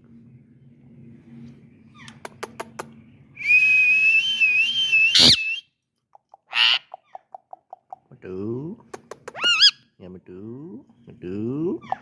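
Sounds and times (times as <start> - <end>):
parrot whistling: 3.4 - 5.6
parrot screech: 5.1 - 5.6
parrot squawk: 6.5 - 7.2, 9.3 - 9.8, 11.8 - 12.0.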